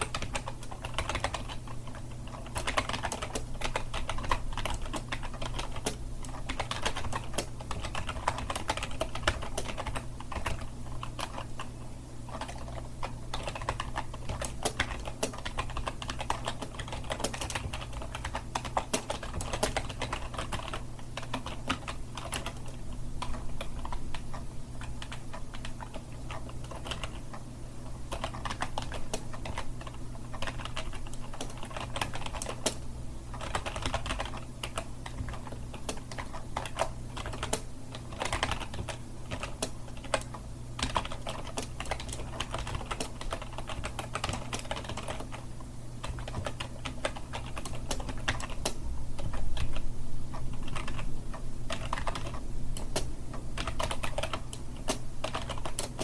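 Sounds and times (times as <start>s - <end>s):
keyboard typing clicks: 0.0s - 11.7s, 12.3s - 27.4s, 28.1s - 45.4s, 46.0s - 56.0s
low steady hum: 0.0s - 56.0s.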